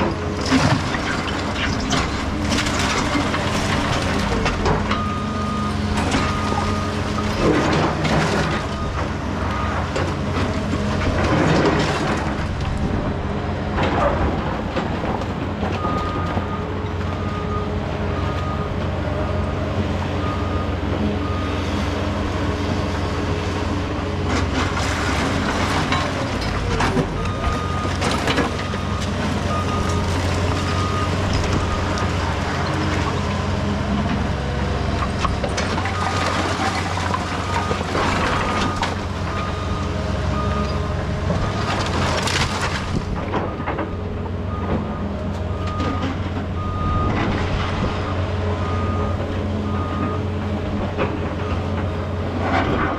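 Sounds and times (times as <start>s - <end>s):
diesel engine running: 0.0s - 52.9s.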